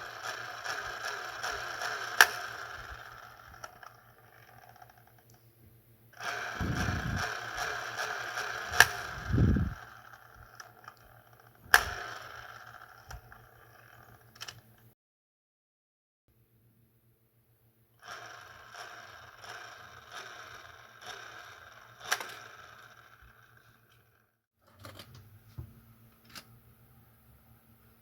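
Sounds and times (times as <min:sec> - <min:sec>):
toy cars rolling on plastic track: 0:00.0 - 0:05.4, 0:06.2 - 0:14.8, 0:18.0 - 0:25.0.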